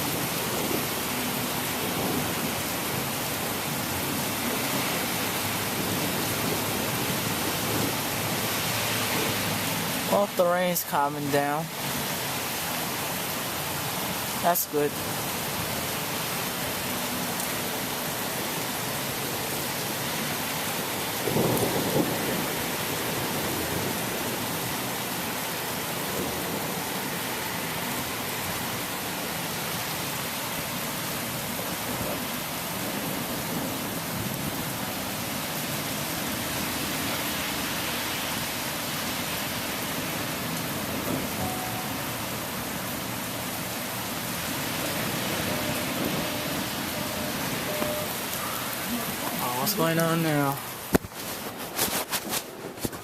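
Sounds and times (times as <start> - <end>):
steady rain: 0.0 - 53.0
thunder rumble: 21.0 - 24.9.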